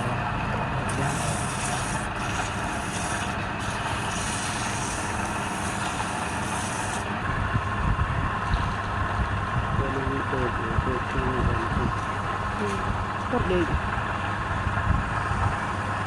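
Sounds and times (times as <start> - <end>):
wood lathe running: 0.0 - 7.4
tool hissing on spinning wood: 0.8 - 7.3.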